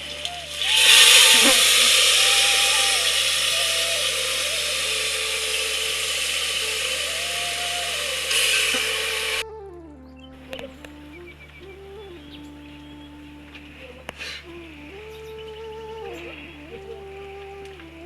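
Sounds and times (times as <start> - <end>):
loud rushing hiss: 0.0 - 9.4
soft background music: 7.0 - 18.0.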